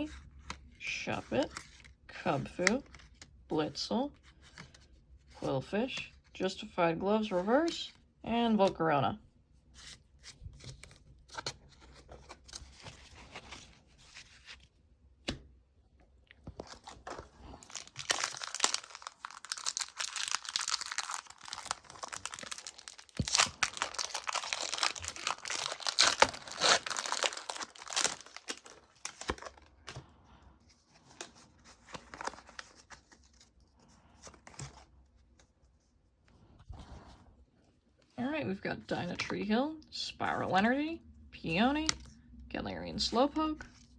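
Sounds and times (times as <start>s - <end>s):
cards rustling: 9.8s - 15.4s, 16.3s - 30.1s, 30.7s - 35.4s
foil wrapper tearing and crinkling: 17.6s - 29.6s.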